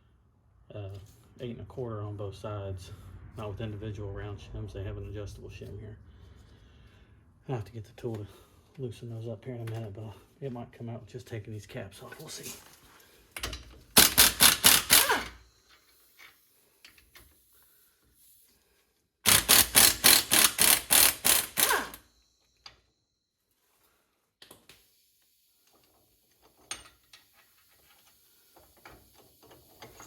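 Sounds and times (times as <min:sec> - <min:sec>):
power wrench clattering: 0:13.4 - 0:15.4, 0:19.3 - 0:22.0.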